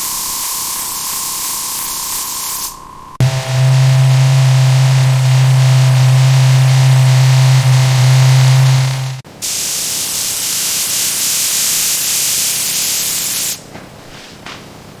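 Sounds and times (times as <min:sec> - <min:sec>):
spraying hiss: 0:00.0 - 0:13.6
loud low hum: 0:03.2 - 0:09.2.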